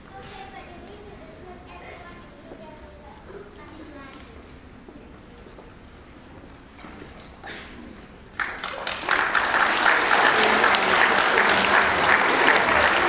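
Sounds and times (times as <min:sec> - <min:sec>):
children applauding: 0:08.4 - 0:13.0.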